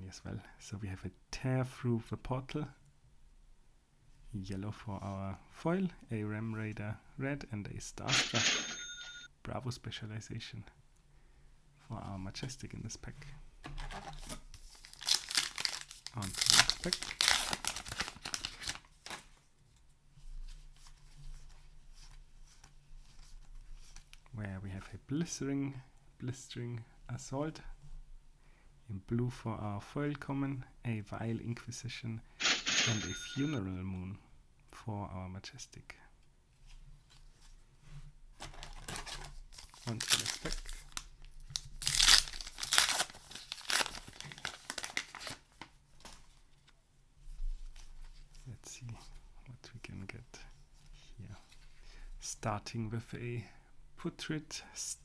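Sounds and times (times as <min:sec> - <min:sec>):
trading cards rustling and clicking: 0:13.7 - 0:19.2, 0:32.4 - 0:33.6
paper wrapper tearing and crinkling: 0:13.9 - 0:19.3, 0:38.4 - 0:45.6.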